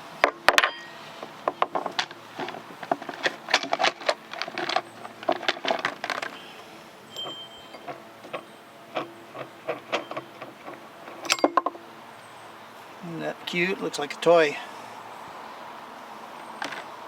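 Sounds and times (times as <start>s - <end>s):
small metal parts clinking: 0.6s - 11.8s.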